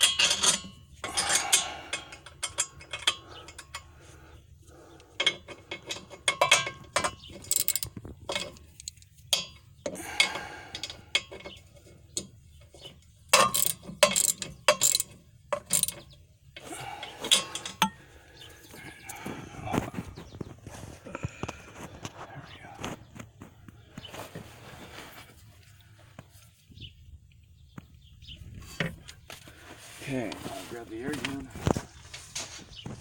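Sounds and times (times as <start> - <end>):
hand ratchet clicking: 5.2 - 9.5, 13.3 - 16.0.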